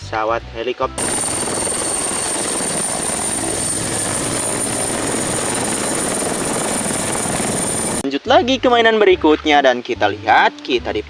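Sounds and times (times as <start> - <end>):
helicopter rotor and engine: 1.0 - 8.0.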